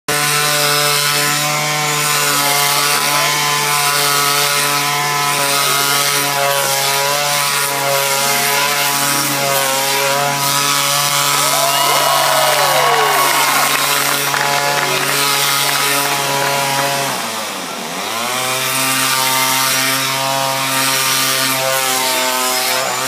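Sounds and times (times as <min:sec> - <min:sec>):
chainsaw engine running: 0:00.1 - 0:23.0.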